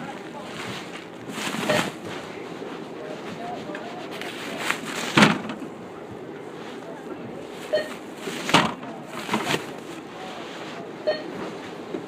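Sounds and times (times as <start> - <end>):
supermarket murmur: 0.0 - 12.0
short electronic beep: 7.7 - 8.0.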